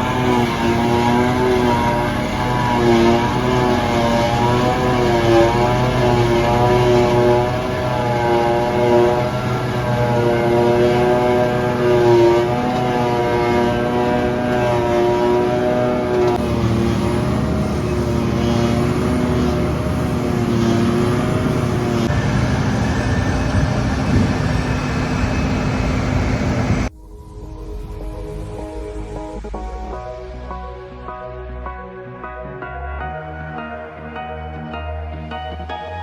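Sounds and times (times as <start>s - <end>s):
farm machinery diesel engines: 0.0s - 26.9s.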